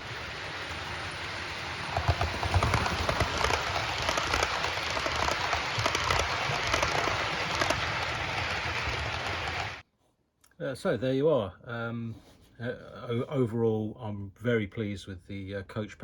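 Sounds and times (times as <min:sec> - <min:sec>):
model train running: 0:00.0 - 0:09.8
wheels clicking over rail joints: 0:00.0 - 0:09.8.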